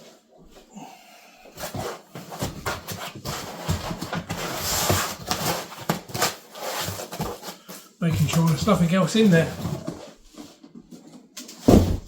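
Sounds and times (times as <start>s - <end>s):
cardboard box knocks and scraping: 11.6s - 12.0s.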